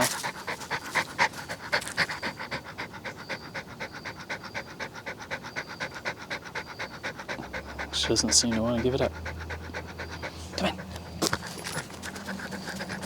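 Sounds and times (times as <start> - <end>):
dog panting: 0.0 - 13.0.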